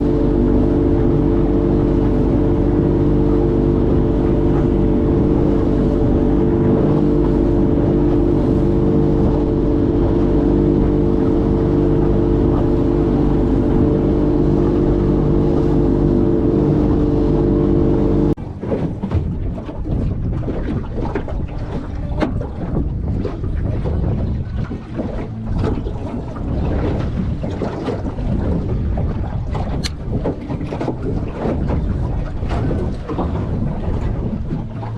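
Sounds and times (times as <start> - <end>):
boat motor running: 0.0 - 34.9
water slapping against hull: 0.0 - 34.9
wind buffeting microphone: 0.0 - 34.9.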